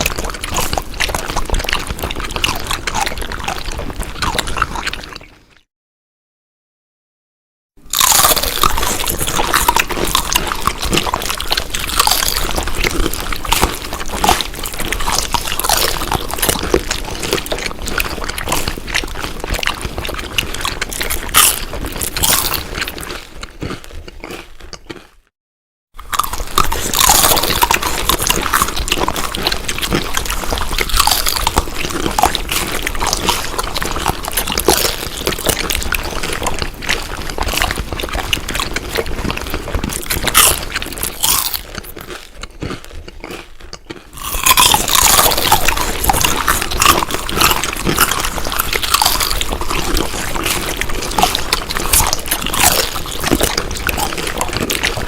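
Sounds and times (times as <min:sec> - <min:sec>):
close-up chewing and eating: 0:00.0 - 0:05.7, 0:07.8 - 0:25.3, 0:25.9 - 0:55.0.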